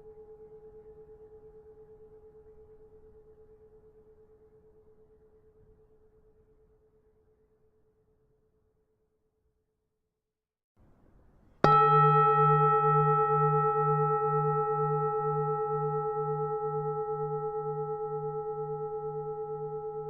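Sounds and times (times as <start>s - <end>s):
temple bell ringing: 11.6s - 20.0s.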